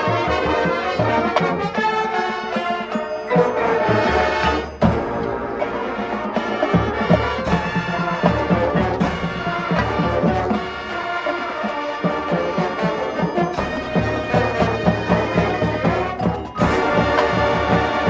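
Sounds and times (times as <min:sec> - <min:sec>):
marching band playing: 0:00.0 - 0:18.0.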